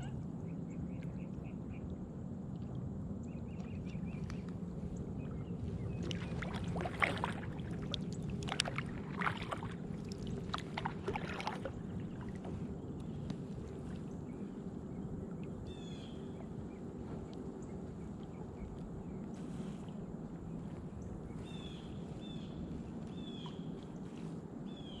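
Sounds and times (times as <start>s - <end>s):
kayak paddle splashing water: 3.6s - 14.4s.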